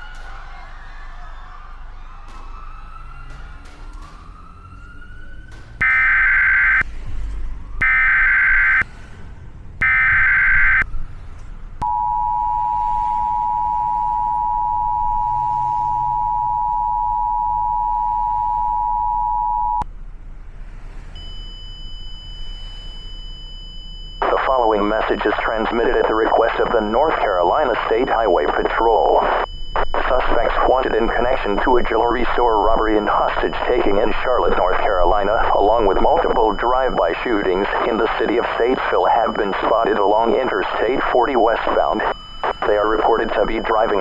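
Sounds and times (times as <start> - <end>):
siren wailing: 1.1 - 8.9, 9.8 - 11.0, 11.8 - 19.8, 24.1 - 44.0
buzzing data tones: 5.8 - 6.8, 7.8 - 8.8, 9.8 - 10.8, 24.2 - 44.0
steady two-tone alert signal: 5.8 - 6.8, 7.8 - 8.8, 9.8 - 10.8, 11.8 - 19.8, 21.2 - 44.0.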